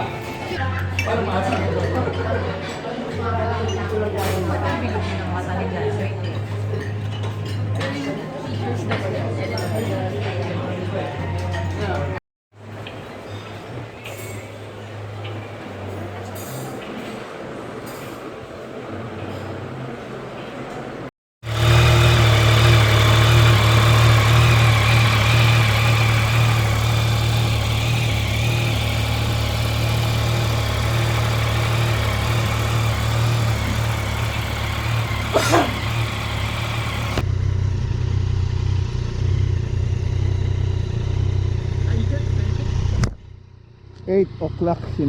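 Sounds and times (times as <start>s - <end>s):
motorcycle engine running: 21.4s - 45.0s.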